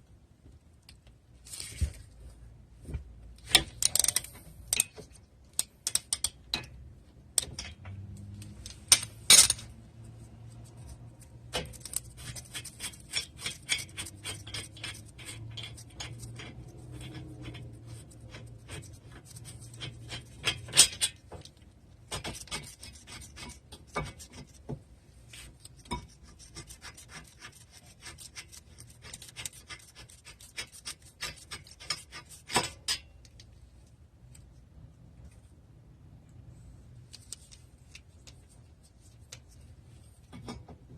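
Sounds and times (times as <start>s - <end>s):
hand tool rasping on metal: 11.8s - 21.1s, 22.1s - 24.6s, 25.9s - 32.8s.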